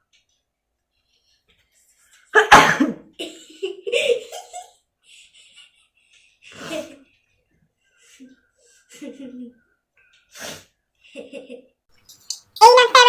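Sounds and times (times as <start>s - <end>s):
woman giggling: 8.9s - 9.6s.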